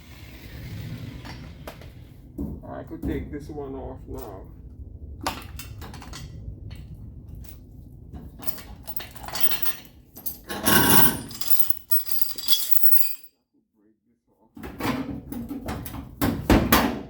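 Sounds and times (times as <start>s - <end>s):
low rumble: 0.0s - 12.0s
metal scraping: 4.1s - 13.2s
metal tools clinking: 8.4s - 13.3s.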